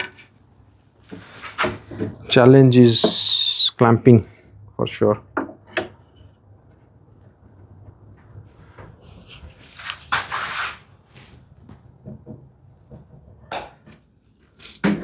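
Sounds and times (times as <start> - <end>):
wood scraping and rubbing: 9.0 - 10.8.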